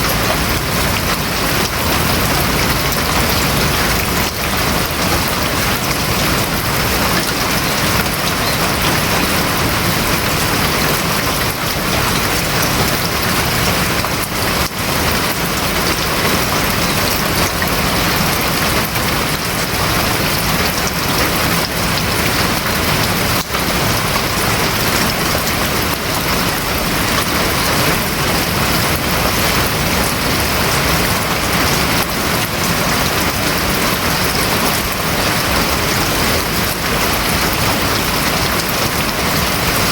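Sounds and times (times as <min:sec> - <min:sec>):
rain on a roof: 0:00.0 - 0:39.9.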